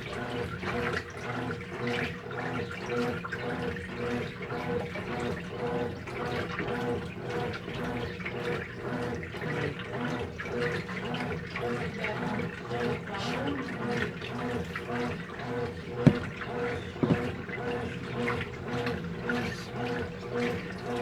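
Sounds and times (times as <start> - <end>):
washing machine motor hum: 0.0 - 21.0
clothes and water sloshing: 6.2 - 21.0.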